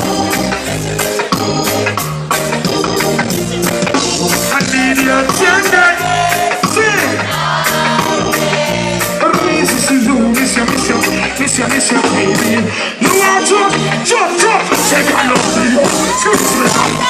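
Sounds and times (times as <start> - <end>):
bass line: 0.0 - 17.0
drums: 0.0 - 17.0
reggae band playing: 0.0 - 17.0
person singing: 4.5 - 17.0.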